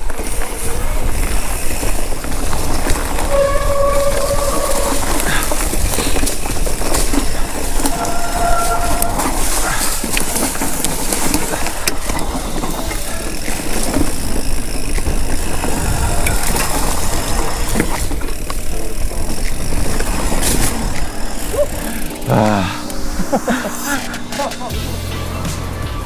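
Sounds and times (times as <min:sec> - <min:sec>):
wind and tyre noise: 0:00.0 - 0:24.3
bike clicks and rattles: 0:00.0 - 0:25.0.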